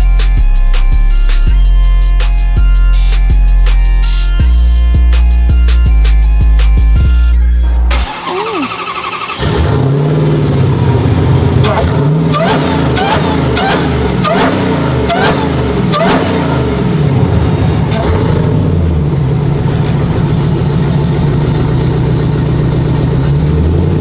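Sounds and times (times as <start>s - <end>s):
engine revving with whine: 7.7s - 24.0s.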